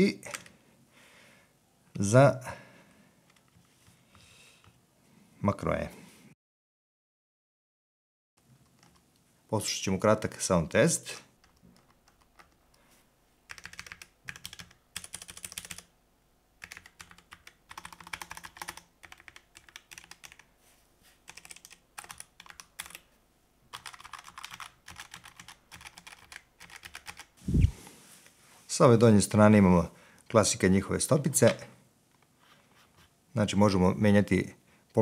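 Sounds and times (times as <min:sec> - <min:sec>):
mechanical keyboard typing: 0:08.7 - 0:09.0, 0:11.4 - 0:12.6, 0:13.5 - 0:15.9, 0:16.6 - 0:20.5, 0:21.3 - 0:23.1, 0:23.7 - 0:27.4.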